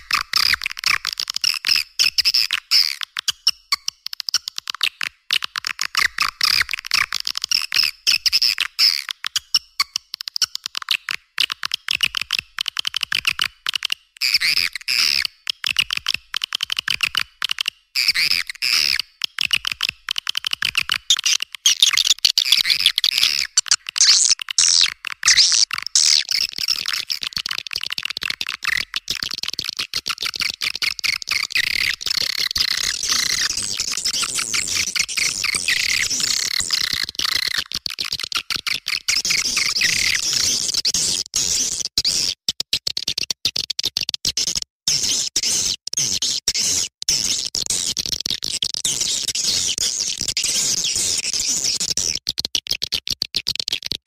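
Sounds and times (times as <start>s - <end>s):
swiftlet chirping and twittering: 21.1s - 27.3s.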